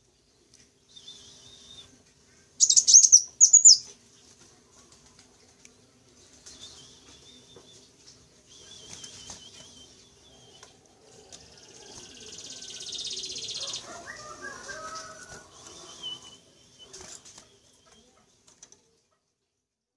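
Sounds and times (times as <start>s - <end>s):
fast buzzy bird trill: 2.6s - 3.8s
high wavering bird trills: 2.6s - 3.9s.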